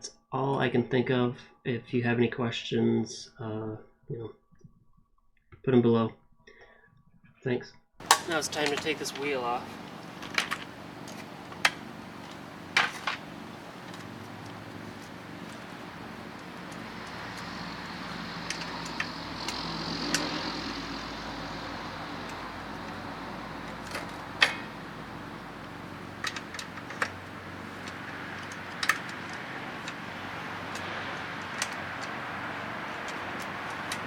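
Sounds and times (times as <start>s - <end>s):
sharp clicks and knocks: 8.0s - 34.0s
steady low hum: 8.0s - 34.0s.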